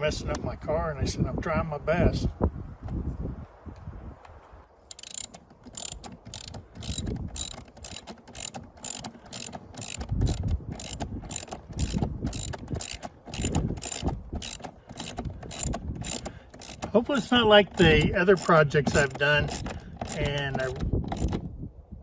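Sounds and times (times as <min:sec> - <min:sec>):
hand ratchet clicking: 0:04.9 - 0:21.4.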